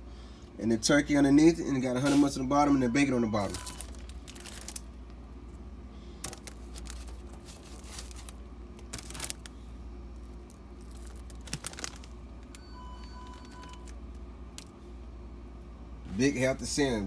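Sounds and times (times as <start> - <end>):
steady low hum: 0.0 - 17.0
paper wrapper crinkling: 3.3 - 5.0, 6.2 - 9.6, 10.2 - 14.0.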